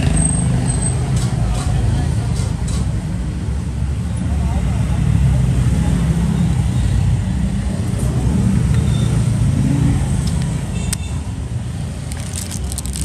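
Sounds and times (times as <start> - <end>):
vehicle engine rumble: 9.3 - 13.0.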